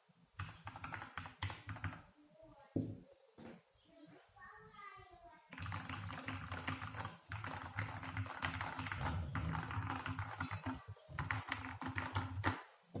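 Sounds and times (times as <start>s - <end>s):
fast typing on mechanical keyboard: 0.4s - 2.0s, 5.5s - 12.6s.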